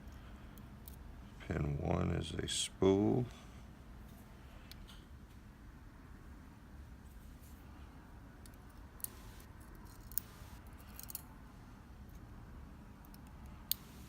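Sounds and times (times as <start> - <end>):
low steady hum: 0.0 - 14.0
sharp metal clicks: 13.1 - 14.0.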